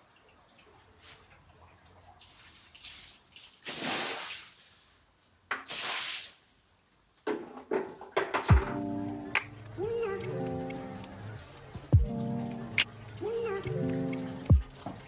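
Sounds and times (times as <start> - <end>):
tap water running in spurts: 0.0 - 4.8.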